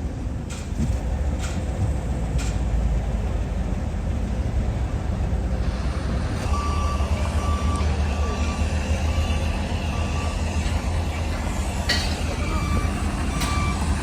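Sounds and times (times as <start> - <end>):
diesel engine rumbling: 0.0 - 14.0
reversing alarm beeping: 6.4 - 14.0.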